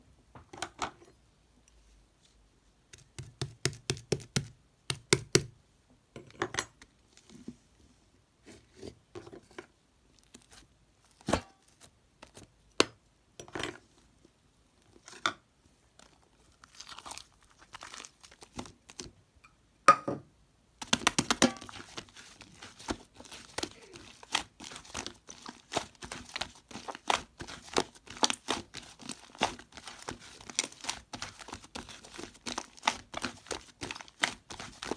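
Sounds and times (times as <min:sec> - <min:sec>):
slime clicking and crackling: 0:20.8 - 0:34.9.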